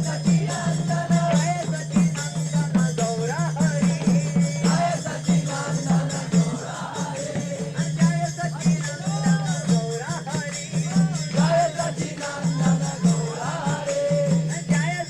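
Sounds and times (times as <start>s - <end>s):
hand cymbals jingling: 0.0s - 15.0s
hand drums beating: 0.0s - 15.0s
group of voices chanting: 4.6s - 7.9s, 11.3s - 14.4s.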